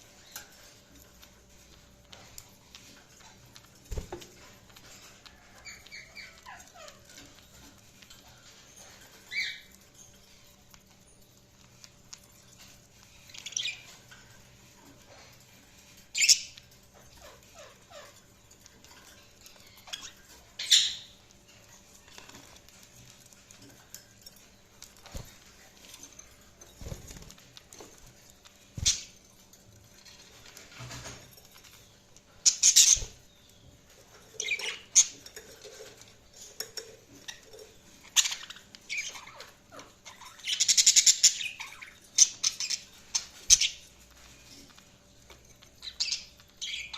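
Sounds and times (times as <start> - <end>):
budgerigars chirping: 19.8 - 21.2.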